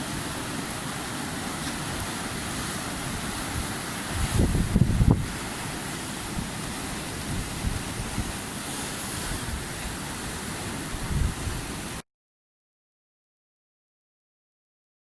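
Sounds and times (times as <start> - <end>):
ocean surf washing: 0.0 - 12.0
wind buffeting microphone: 1.8 - 5.5, 6.2 - 8.4, 10.8 - 11.8.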